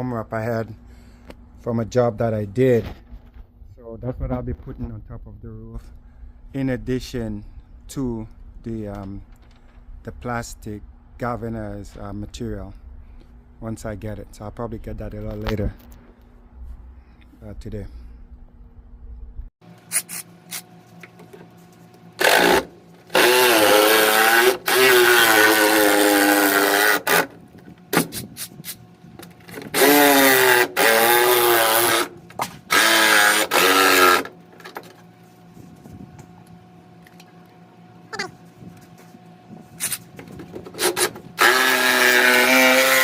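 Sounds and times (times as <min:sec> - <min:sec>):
power drill running: 0:22.2 - 0:27.4, 0:29.6 - 0:32.1, 0:32.7 - 0:34.3, 0:40.8 - 0:43.0.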